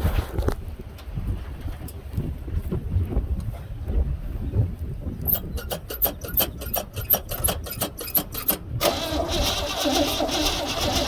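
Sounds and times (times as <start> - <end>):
starter cranking engine: 5.3 - 11.0.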